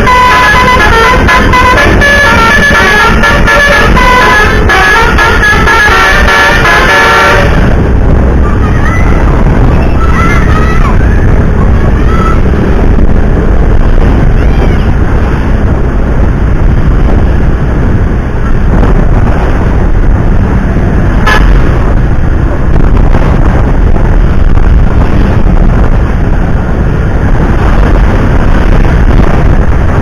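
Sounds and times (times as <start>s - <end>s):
car horn toot: 0.0s - 7.8s, 21.2s - 21.8s
road traffic rumble: 0.0s - 30.0s.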